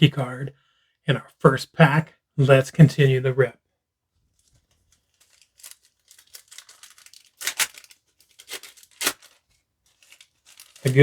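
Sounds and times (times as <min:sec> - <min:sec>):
wrapper crinkling: 0:04.3 - 0:11.0
wrapper tearing: 0:04.4 - 0:11.0.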